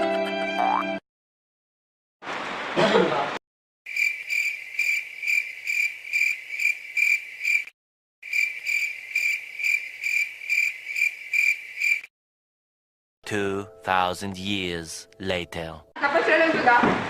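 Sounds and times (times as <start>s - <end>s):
cricket chirping: 3.9s - 12.1s.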